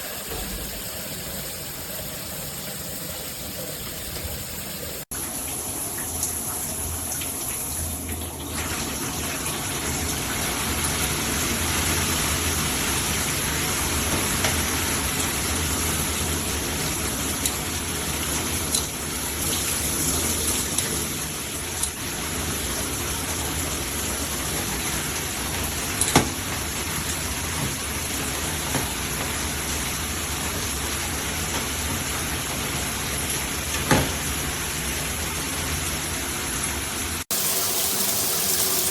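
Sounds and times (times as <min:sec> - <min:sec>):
shower water spraying: 0:00.0 - 0:05.1, 0:37.2 - 0:38.9.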